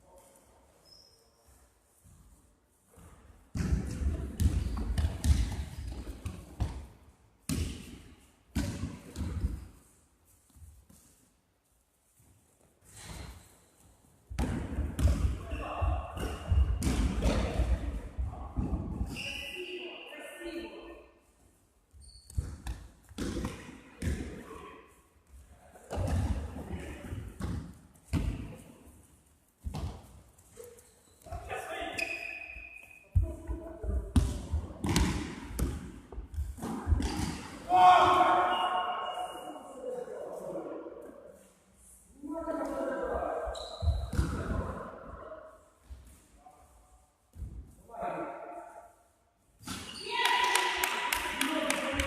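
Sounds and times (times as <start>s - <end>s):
basketball bouncing on hall floor: 2.0s - 9.7s, 14.3s - 19.2s, 21.9s - 24.4s, 25.3s - 28.7s, 29.6s - 30.2s, 31.3s - 37.6s, 43.7s - 44.8s
basketball bouncing: 3.5s - 6.8s.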